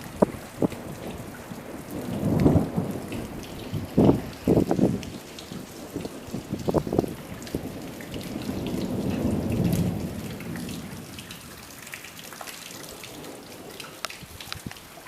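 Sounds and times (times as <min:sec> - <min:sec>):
thunder rumbling: 0:00.0 - 0:14.8
raindrops ticking: 0:00.0 - 0:15.0
steady rain: 0:00.0 - 0:15.0.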